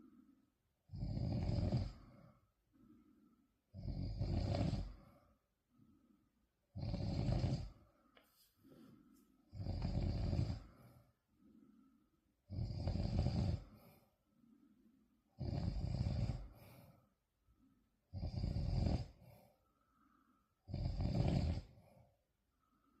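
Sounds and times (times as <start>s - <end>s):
faint breaths: 0.0s - 0.7s, 1.6s - 3.8s, 4.5s - 12.5s, 13.4s - 15.3s, 16.3s - 18.1s, 19.1s - 20.7s, 21.6s - 23.0s
loud snoring: 0.9s - 2.4s, 3.7s - 5.3s, 6.7s - 7.9s, 9.5s - 11.0s, 12.5s - 14.0s, 15.3s - 17.0s, 18.1s - 19.5s, 20.7s - 22.0s.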